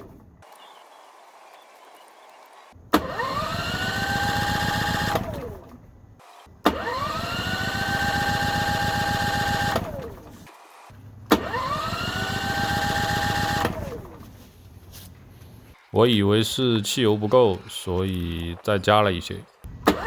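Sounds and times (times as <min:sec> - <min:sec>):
generator starter cranking engine: 0:00.0 - 0:14.4, 0:19.6 - 0:20.0.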